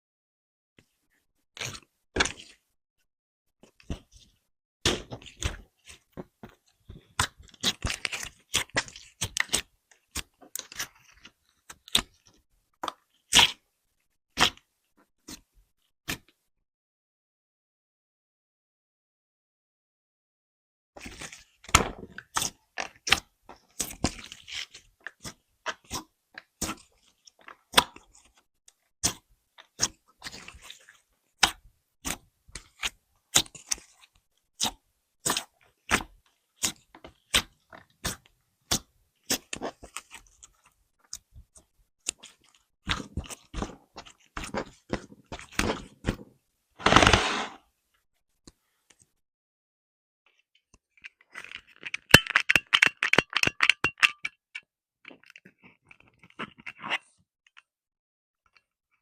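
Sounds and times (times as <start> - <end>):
sharp clicks and taps: 51.9 - 54.4.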